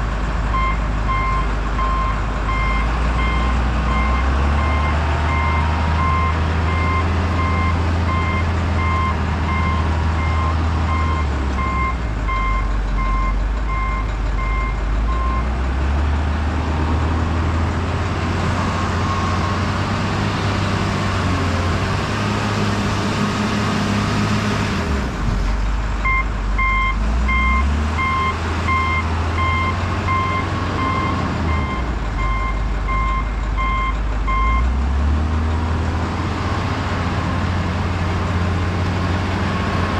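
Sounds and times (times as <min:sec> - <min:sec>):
diesel truck engine running: 0:00.0 - 0:39.9
reversing alarm beeping: 0:00.5 - 0:15.4, 0:26.0 - 0:34.7.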